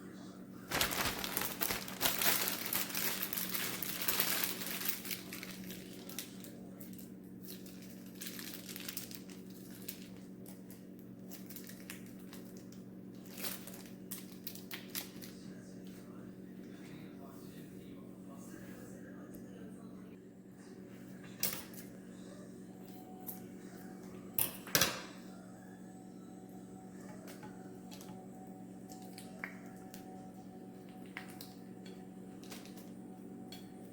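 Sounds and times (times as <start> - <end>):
steady low hum: 0.0 - 33.9
crinkling and rustling: 0.6 - 15.4.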